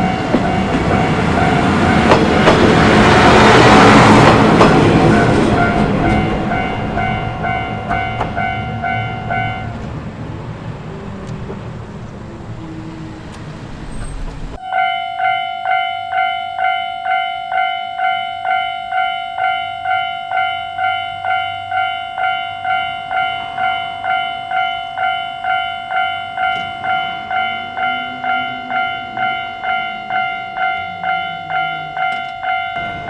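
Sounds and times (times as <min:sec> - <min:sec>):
train rumbling by: 0:00.0 - 0:14.6, 0:20.8 - 0:33.0
level crossing bell ringing: 0:02.9 - 0:09.8, 0:14.6 - 0:33.0.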